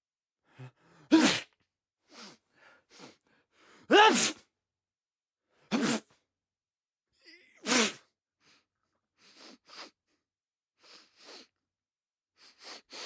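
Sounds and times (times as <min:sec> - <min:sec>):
person sneezing loudly: 0:01.1 - 0:01.5, 0:03.9 - 0:04.4, 0:05.7 - 0:06.1, 0:07.6 - 0:08.0.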